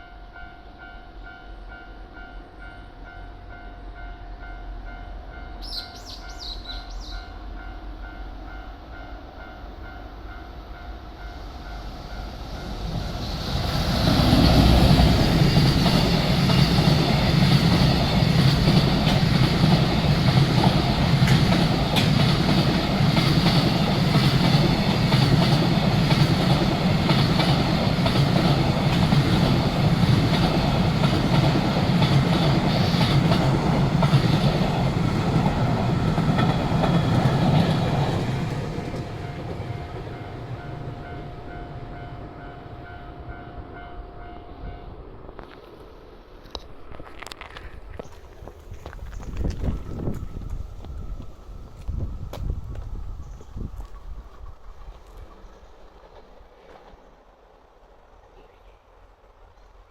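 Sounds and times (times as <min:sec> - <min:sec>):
train wheels clattering over rail joints: 0:13.5 - 0:39.6.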